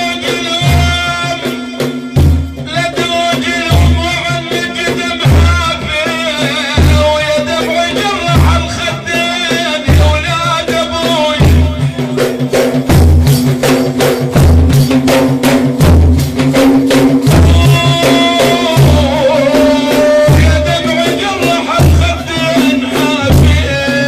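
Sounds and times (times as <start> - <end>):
deep frame drum strokes: 9.9 - 24.0.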